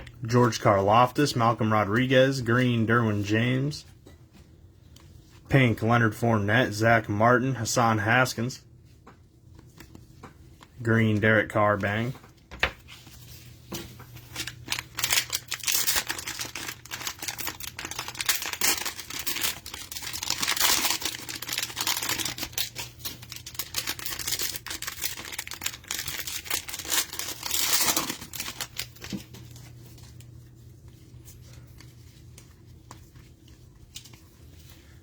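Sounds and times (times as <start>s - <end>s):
cellophane crinkling and tearing: 14.2s - 30.3s.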